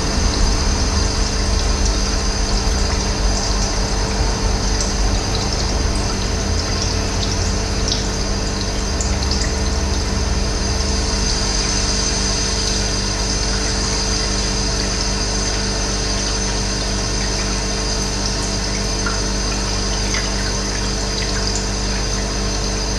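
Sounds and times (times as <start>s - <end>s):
water rushing: 0.0s - 21.2s
low hum: 0.0s - 22.9s.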